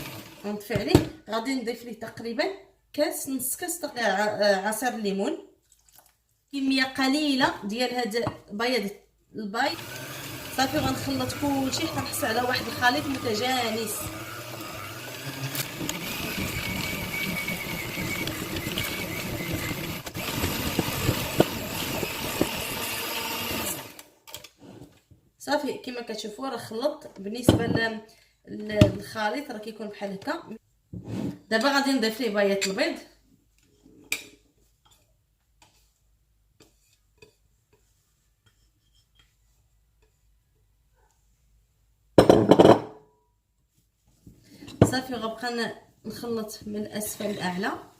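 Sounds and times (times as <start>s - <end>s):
electric hand mixer running: 0.0s - 0.4s, 9.7s - 24.0s.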